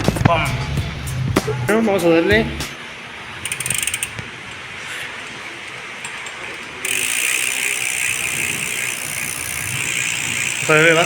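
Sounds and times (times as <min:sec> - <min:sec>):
bicycle hub ratcheting clicks: 0:03.4 - 0:11.0.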